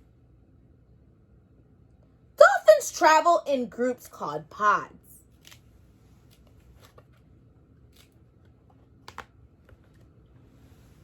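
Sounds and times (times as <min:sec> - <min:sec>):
book pages rustling: 0:05.3 - 0:07.3, 0:07.9 - 0:11.0
page clicks: 0:09.0 - 0:10.1.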